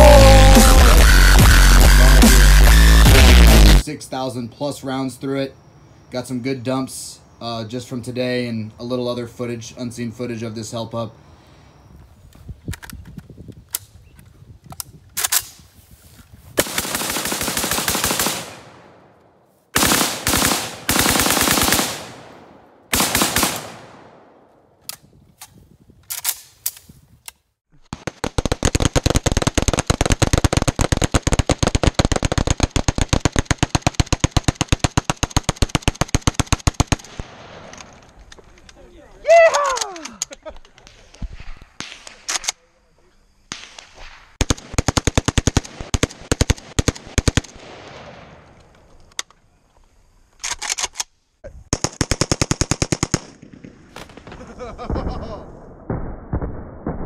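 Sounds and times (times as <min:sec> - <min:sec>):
pistol gunshots: 0:16.6 - 0:19.2, 0:19.8 - 0:24.4.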